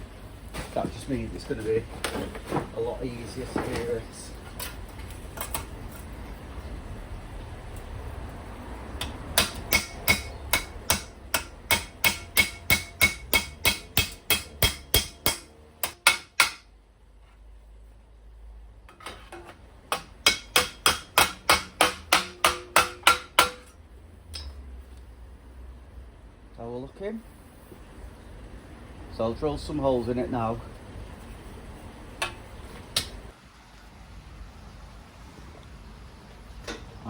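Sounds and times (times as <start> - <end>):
hammer striking metal panel: 9.0 - 16.7, 19.9 - 23.7.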